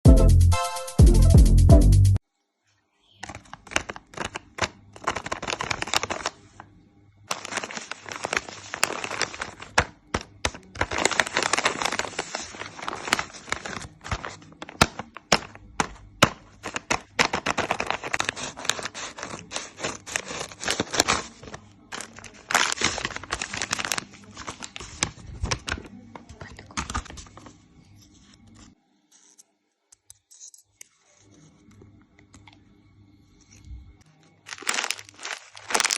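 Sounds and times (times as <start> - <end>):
packets crinkling and tearing: 3.3 - 6.6, 7.3 - 27.4, 34.5 - 35.9.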